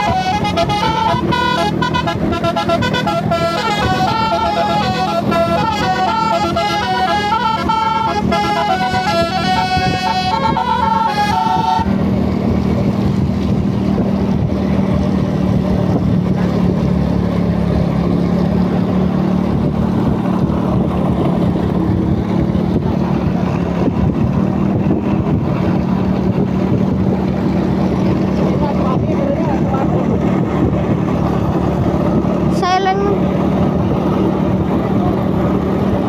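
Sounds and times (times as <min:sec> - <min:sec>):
multi-tone bus horn tune: 0:00.0 - 0:12.3
bus engine low drone: 0:00.0 - 0:36.0.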